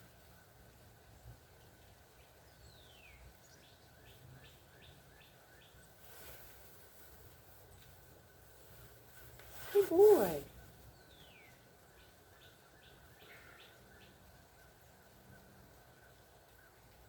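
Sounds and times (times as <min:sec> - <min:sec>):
faint birdsong: 0:00.0 - 0:17.0
steady low hiss: 0:00.0 - 0:17.0.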